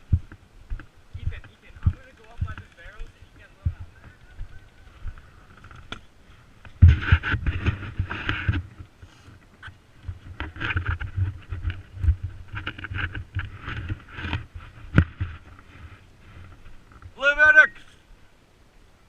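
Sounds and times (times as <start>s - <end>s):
uneven footfalls: 0.0s - 6.0s
clothing rubbing microphone: 0.0s - 17.2s.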